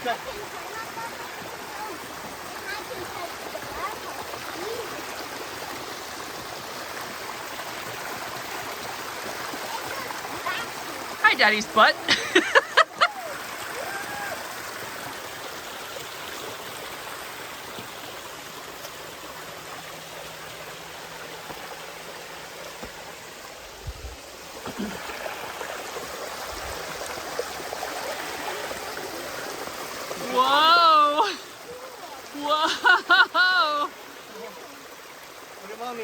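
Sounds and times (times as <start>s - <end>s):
waterfall splashing: 0.0s - 36.0s.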